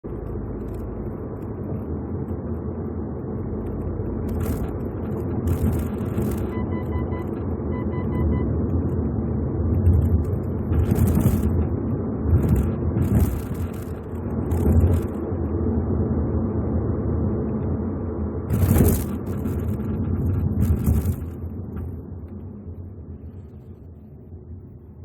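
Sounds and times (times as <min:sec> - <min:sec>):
road rumble inside car: 0:00.0 - 0:25.0
rattling flapping noise: 0:03.4 - 0:06.6, 0:09.6 - 0:15.5, 0:18.5 - 0:23.9
electronic beeps: 0:05.9 - 0:08.6.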